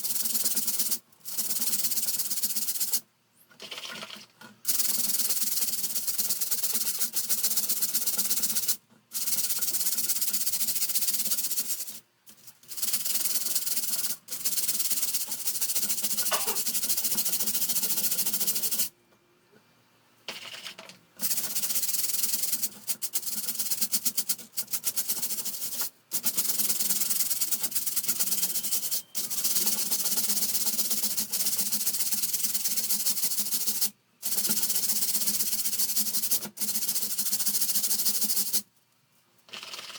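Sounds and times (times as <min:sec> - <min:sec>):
fast scrubbing on a fan: 0:21.2 - 0:38.6.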